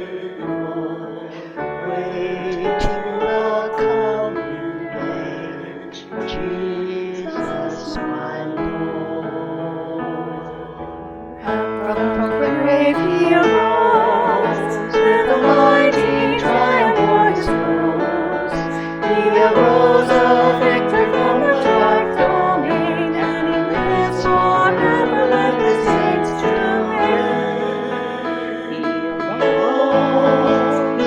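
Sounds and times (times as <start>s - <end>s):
hymn singing: 0.0s - 31.0s
piano accompaniment: 0.0s - 31.0s.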